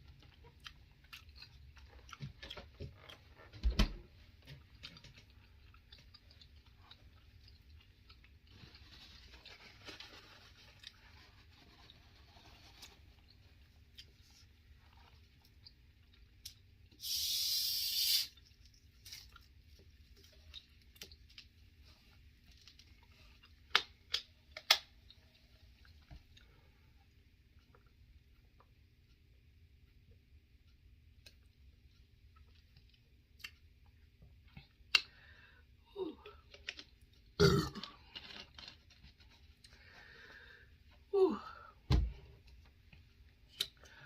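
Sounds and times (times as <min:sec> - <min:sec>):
person chewing olives: 0:00.0 - 0:03.6, 0:04.3 - 0:11.6, 0:12.8 - 0:17.0, 0:18.4 - 0:29.2, 0:31.0 - 0:40.6, 0:43.5 - 0:44.0
burst of hiss: 0:17.0 - 0:18.4.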